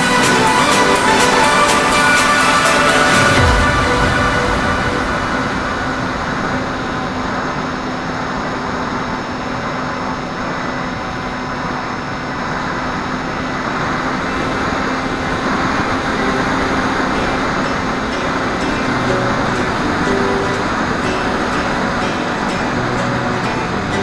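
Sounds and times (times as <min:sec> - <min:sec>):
wind rush: 0:00.0 - 0:08.2.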